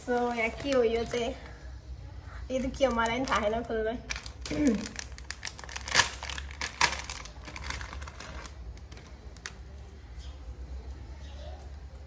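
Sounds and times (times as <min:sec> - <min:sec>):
gift packaging crinkling: 0:02.6 - 0:09.6
packaging snaps: 0:04.1 - 0:09.6.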